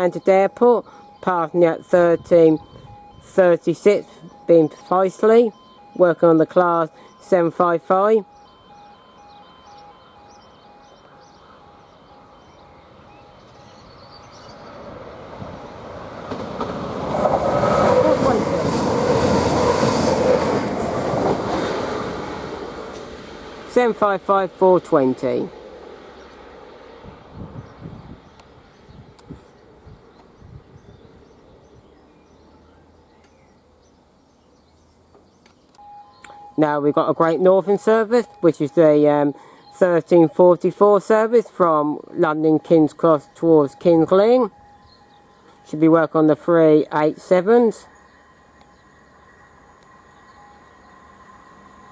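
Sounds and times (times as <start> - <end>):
train approaching: 0.0 - 33.1, 35.8 - 51.9
faint outdoor background noise: 0.0 - 51.9
faint high chirps: 8.1 - 14.8, 35.7 - 36.7.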